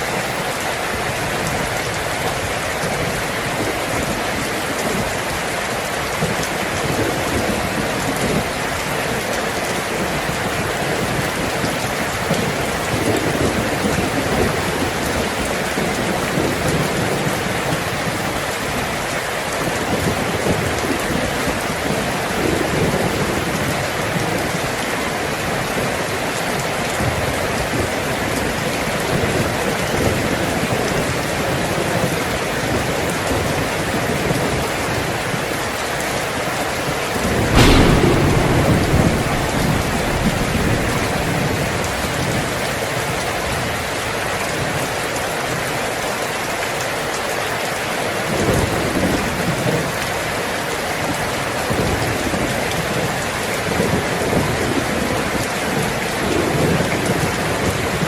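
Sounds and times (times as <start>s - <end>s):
heavy rain on a tin roof: 0.0s - 58.0s
thunder rumbling: 37.2s - 44.0s.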